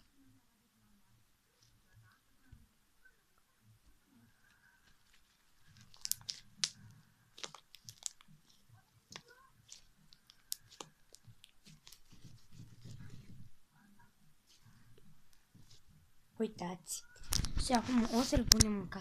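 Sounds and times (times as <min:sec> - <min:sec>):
slime squelching: 0:04.8 - 0:13.6
slime crackling and popping: 0:04.9 - 0:13.0.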